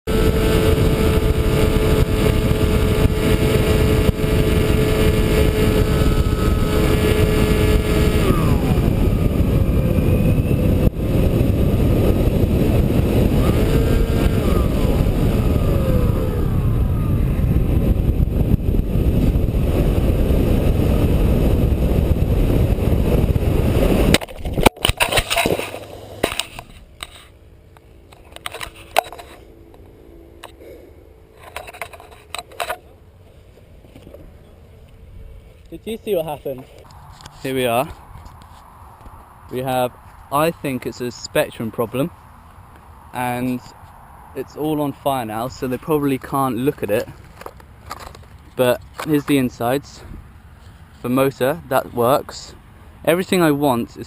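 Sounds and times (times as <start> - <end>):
electric motor whine: 0.1 - 26.9
wind rush: 0.1 - 27.0
model plane crash clatters: 24.1 - 27.1.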